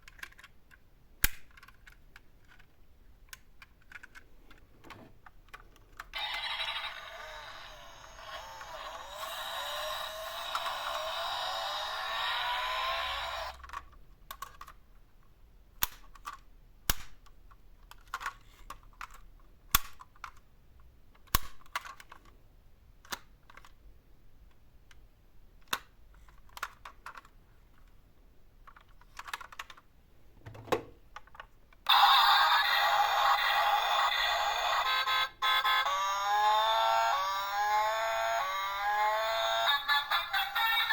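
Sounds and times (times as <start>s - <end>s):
toy cars clicking and tapping: 5.5s - 14.8s, 15.8s - 20.4s, 25.6s - 27.3s, 31.3s - 40.9s
electronic toy siren: 6.2s - 13.6s, 31.9s - 40.9s.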